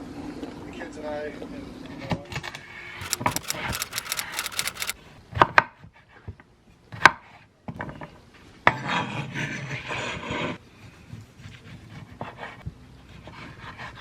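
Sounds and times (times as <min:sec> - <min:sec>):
sharp clicks or knocks: 0:03.0 - 0:05.0.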